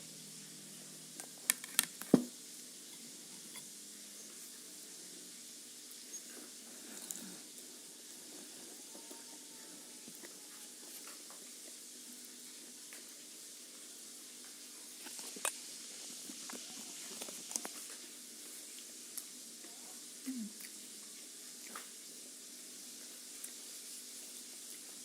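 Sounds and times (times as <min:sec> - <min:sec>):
steady hiss: 0:00.0 - 0:25.0
chewing with mouth clicks: 0:20.5 - 0:22.0.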